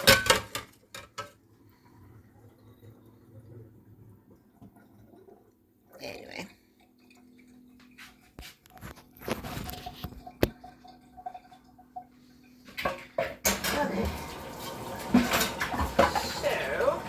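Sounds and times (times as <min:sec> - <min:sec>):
dishes and silverware clinking: 0:00.0 - 0:01.4, 0:15.1 - 0:17.0.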